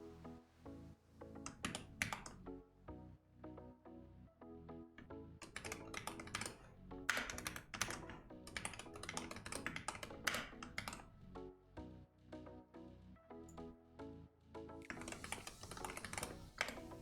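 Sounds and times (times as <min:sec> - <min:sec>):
soft background music: 0:00.0 - 0:17.0
fast keyboard typing: 0:01.5 - 0:02.4, 0:05.4 - 0:11.1, 0:14.9 - 0:17.0.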